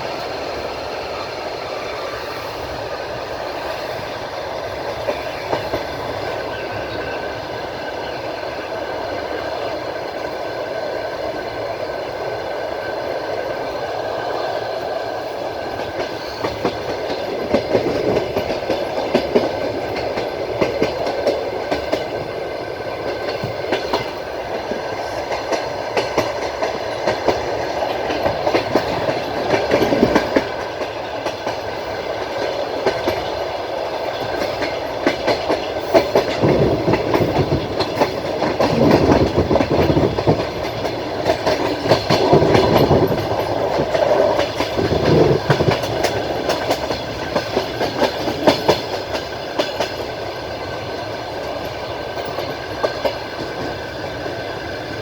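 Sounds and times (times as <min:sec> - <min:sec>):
train wheels rumbling on rail: 0:00.0 - 0:55.0
wheels clacking over rail joints: 0:12.9 - 0:55.0.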